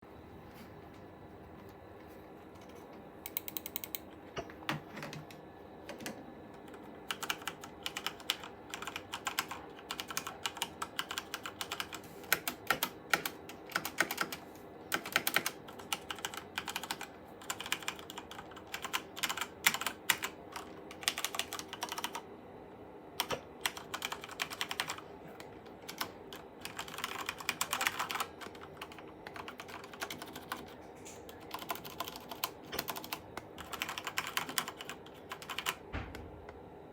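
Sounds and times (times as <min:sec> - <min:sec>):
mechanical keyboard typing: 0:03.3 - 0:04.0, 0:05.9 - 0:22.2, 0:23.2 - 0:25.0, 0:25.8 - 0:35.8.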